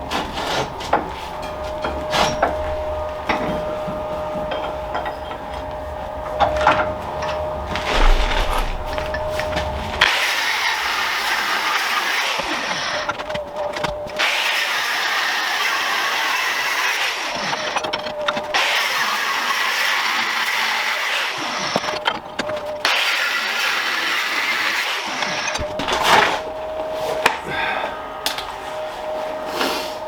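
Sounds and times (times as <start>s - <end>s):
grinder motor whine: 0.9s - 30.0s
angle grinder cutting steel: 7.3s - 13.2s.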